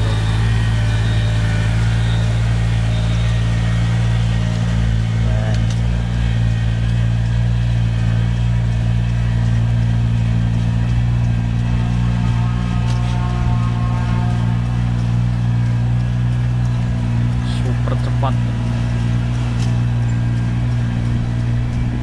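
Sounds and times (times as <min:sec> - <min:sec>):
engine humming steadily: 0:00.0 - 0:22.0.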